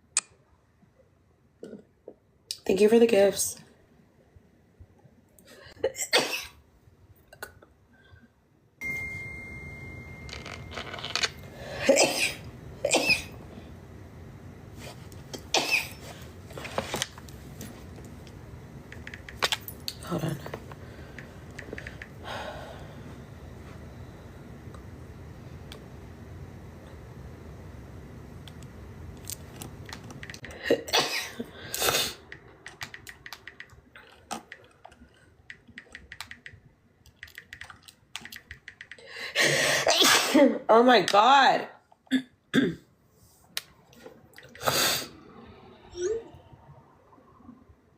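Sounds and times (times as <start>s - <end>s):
woman sneezing: 39.8s - 40.6s.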